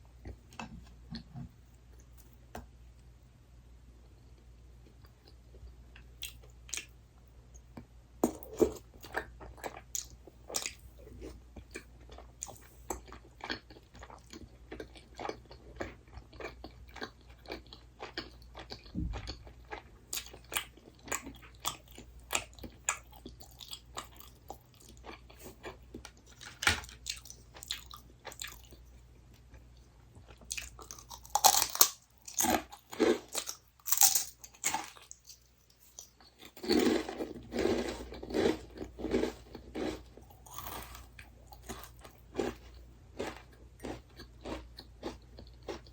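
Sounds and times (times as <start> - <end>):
person chewing crunchy snack: 8.2 - 28.8, 30.2 - 45.9.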